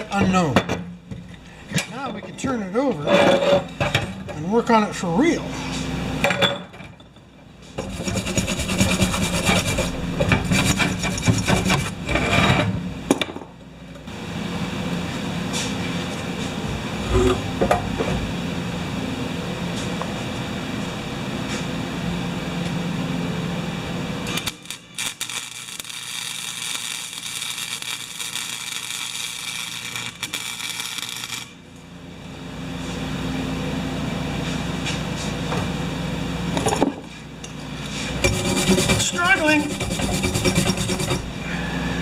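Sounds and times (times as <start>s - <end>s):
welding machine hum: 7.6s - 42.0s
crackling hissing welding arc: 24.2s - 31.6s.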